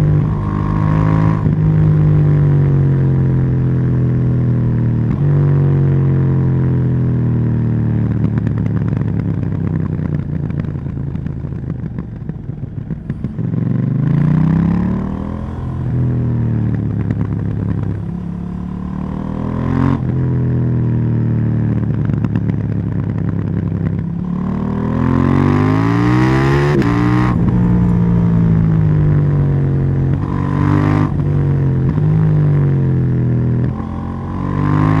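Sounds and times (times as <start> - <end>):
motorcycle engine accelerating: 0.0 - 35.0.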